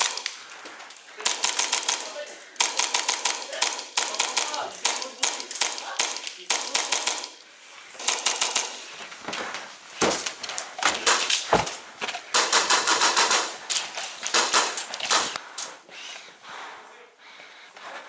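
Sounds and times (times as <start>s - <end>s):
airsoft rifle firing bursts: 0.0s - 0.3s, 1.2s - 7.3s, 8.0s - 8.8s, 11.0s - 11.7s, 12.3s - 15.4s.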